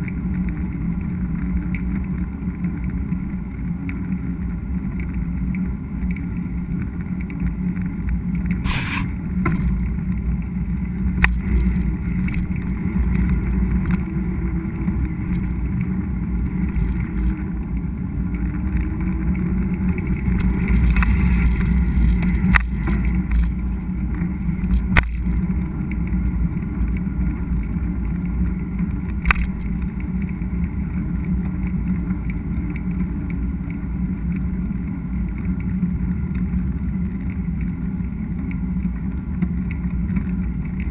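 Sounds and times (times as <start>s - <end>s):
tyres and wind rumbling: 7.0s - 33.2s.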